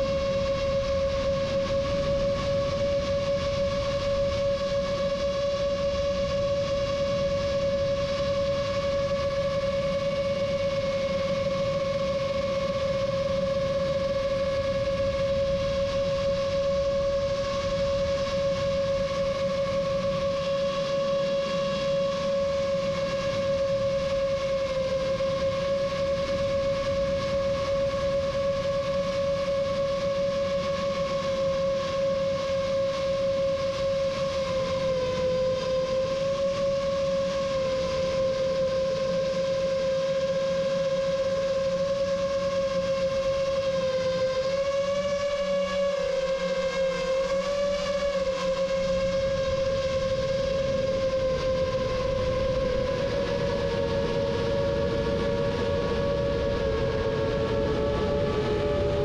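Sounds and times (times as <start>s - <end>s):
wind noise: 0.0s - 31.9s, 47.4s - 59.0s
quadcopter motors whining: 33.0s - 59.0s.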